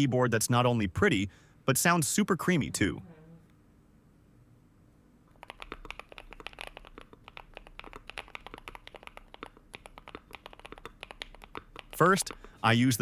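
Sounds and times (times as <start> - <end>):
mechanical keyboard typing: 5.3 - 12.6.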